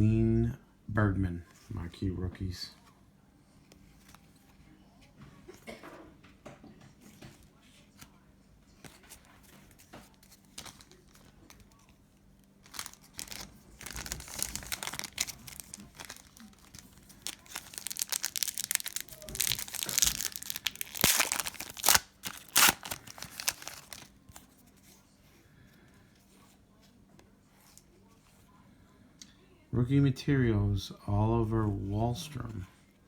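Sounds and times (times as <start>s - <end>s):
wrapper tearing and crinkling: 10.0s - 11.8s, 12.6s - 24.5s.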